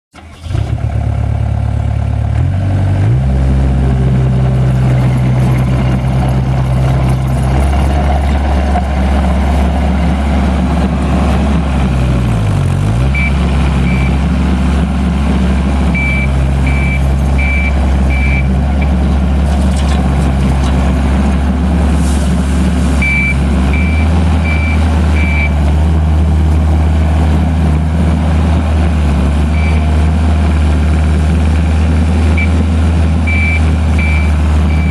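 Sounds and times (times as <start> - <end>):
diesel engine running: 0.1 - 34.9
reverse alarm beeping: 13.1 - 14.2, 15.9 - 19.0, 23.0 - 25.6, 33.3 - 34.9.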